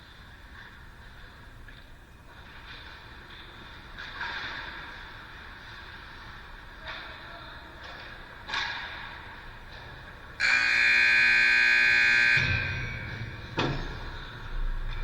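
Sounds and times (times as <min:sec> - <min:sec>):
loud buzzing tone: 0:10.4 - 0:13.6.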